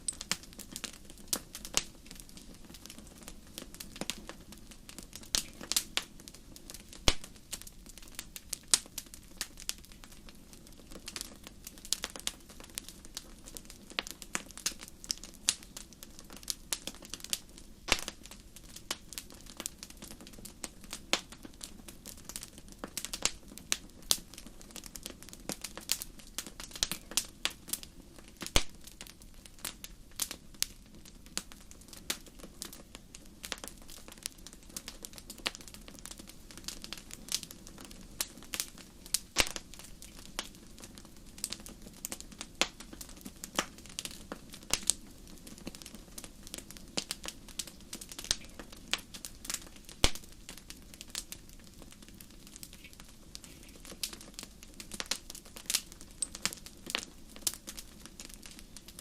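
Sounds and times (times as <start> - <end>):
campfire crackling and popping: 0.0 - 59.0
low rush of flames: 0.0 - 59.0.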